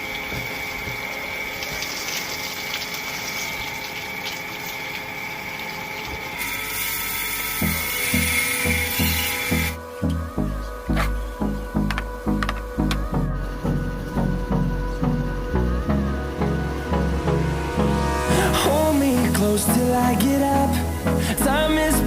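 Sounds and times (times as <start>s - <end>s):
water running and gushing: 0.0s - 9.8s
steady high whine: 5.2s - 22.0s
music with low beat: 7.6s - 22.0s.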